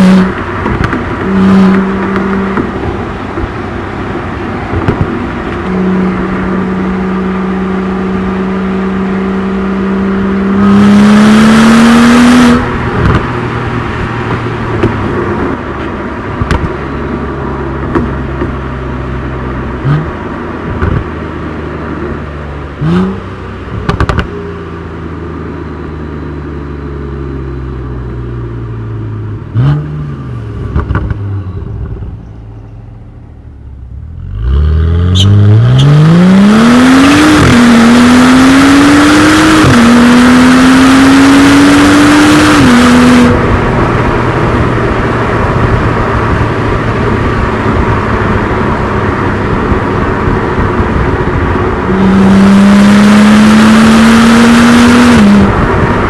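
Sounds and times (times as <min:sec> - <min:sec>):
car engine and exhaust drone: 0:00.0 - 0:56.0
exhaust cracks: 0:30.6 - 0:32.3.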